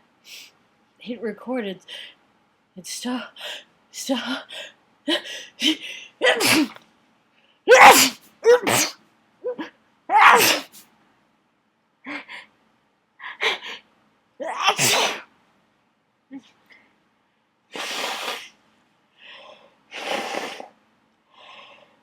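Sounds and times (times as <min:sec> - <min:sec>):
person sneezing: 0:05.6 - 0:06.8, 0:07.7 - 0:09.0, 0:10.1 - 0:10.8, 0:14.5 - 0:15.3, 0:17.8 - 0:18.5.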